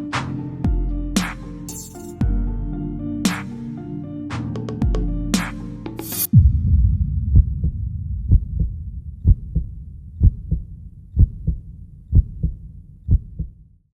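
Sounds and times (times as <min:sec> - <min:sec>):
heartbeat thumps: 0:06.3 - 0:13.6.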